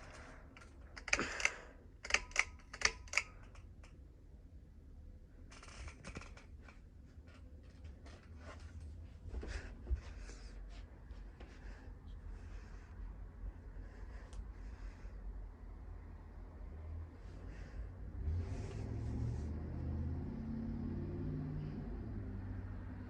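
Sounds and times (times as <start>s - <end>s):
low steady hum: 0.0s - 23.0s
sharp mechanical clicks: 0.6s - 4.0s.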